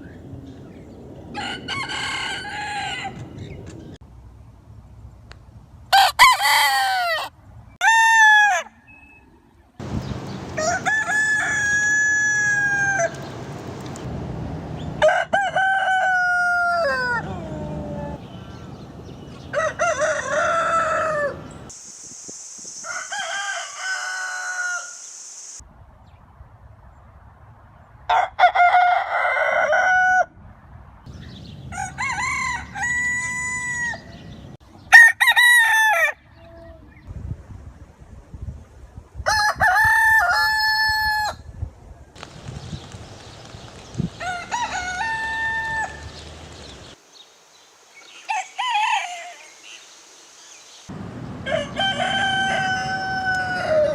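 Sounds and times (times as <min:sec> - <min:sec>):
background noise: 0:00.0 - 0:53.9
roosters crowing: 0:01.3 - 0:03.5, 0:05.9 - 0:08.8, 0:10.3 - 0:13.5, 0:14.8 - 0:21.7, 0:22.8 - 0:25.0, 0:28.1 - 0:30.3, 0:31.5 - 0:36.4, 0:39.3 - 0:41.4, 0:43.9 - 0:47.0, 0:48.1 - 0:49.6, 0:50.9 - 0:53.9.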